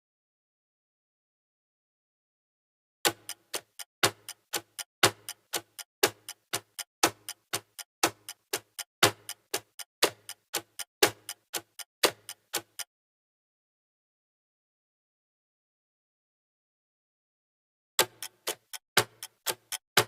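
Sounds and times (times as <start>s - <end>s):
clock ticking: 3.1s - 12.9s, 18.0s - 20.0s.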